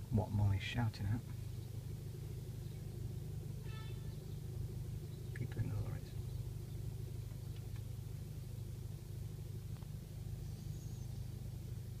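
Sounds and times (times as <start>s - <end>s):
low background rumble: 0.0s - 12.0s
faint clicks: 7.3s - 7.9s.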